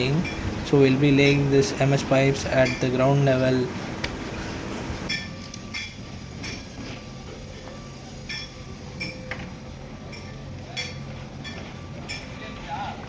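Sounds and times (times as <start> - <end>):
low machine hum: 0.0 - 5.1.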